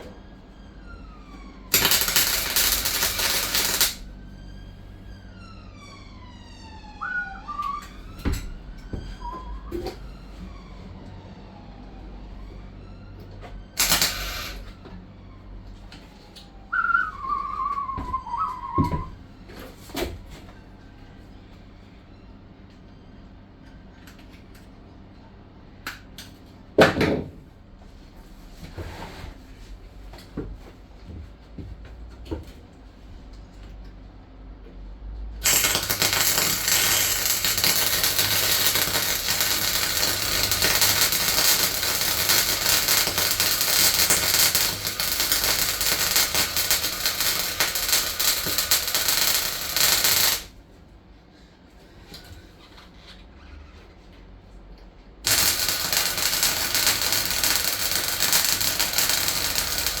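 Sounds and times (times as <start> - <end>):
welding arc crackling: 1.7 - 4.0, 13.8 - 14.7, 35.4 - 50.5, 55.2 - 60.0.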